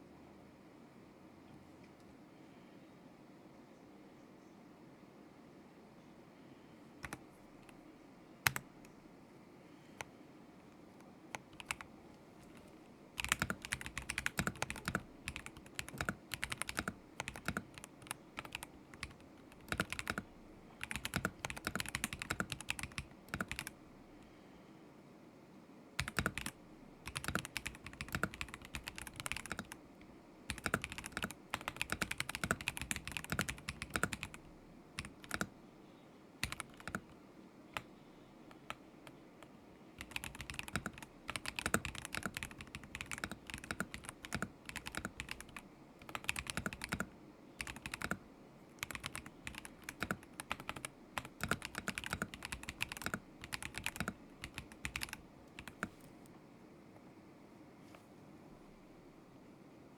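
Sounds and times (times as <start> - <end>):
typing on mechanical keyboard: 7.0 - 7.8, 8.4 - 8.7, 11.3 - 23.8, 26.0 - 29.8, 30.5 - 35.5, 36.4 - 37.2, 40.0 - 48.2, 48.8 - 56.1.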